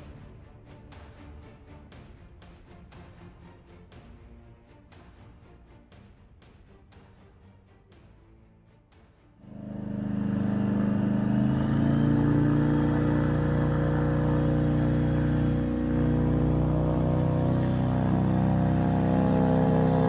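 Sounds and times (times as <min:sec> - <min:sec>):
airboat engine and propeller: 0:09.4 - 0:20.0.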